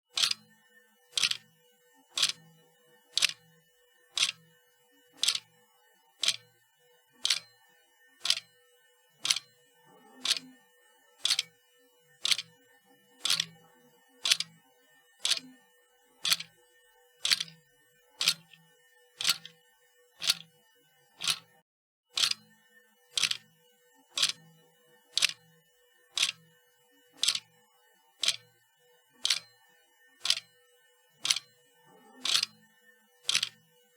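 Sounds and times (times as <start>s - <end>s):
sharp mechanical click: 0.2s - 0.4s, 1.2s - 1.4s, 2.2s - 2.4s, 3.2s - 3.4s, 4.2s - 4.4s, 5.2s - 5.4s, 7.2s - 7.4s, 8.2s - 8.4s, 9.2s - 9.4s, 10.2s - 10.4s, 11.2s - 11.5s, 12.2s - 12.4s, 13.2s - 13.5s, 14.2s - 14.5s, 15.2s - 15.4s, 16.2s - 16.5s, 17.2s - 17.5s, 18.2s - 18.6s, 19.2s - 19.5s, 20.2s - 20.4s, 21.2s - 21.4s, 22.2s - 22.4s, 23.2s - 23.4s, 24.2s - 24.4s, 25.2s - 25.4s, 26.2s - 26.4s, 27.2s - 27.4s, 29.2s - 29.4s, 30.2s - 30.4s, 31.2s - 31.4s, 32.2s - 32.5s, 33.3s - 33.6s.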